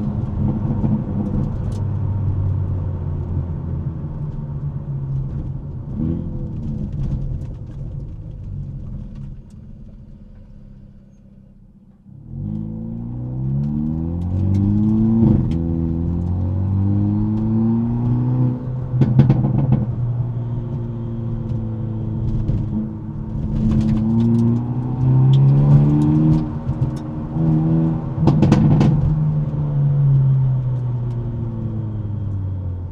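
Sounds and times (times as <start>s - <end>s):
car engine and exhaust revving: 0.0s - 32.9s
exhaust pops: 17.2s - 31.3s.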